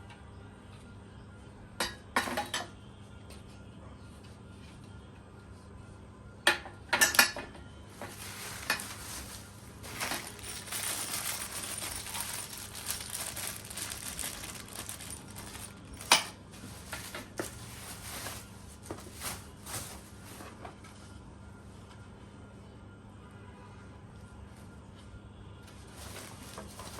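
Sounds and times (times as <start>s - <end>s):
hard parts clinking and knocking: 8.0s - 17.3s
packaging rustling: 8.0s - 20.4s.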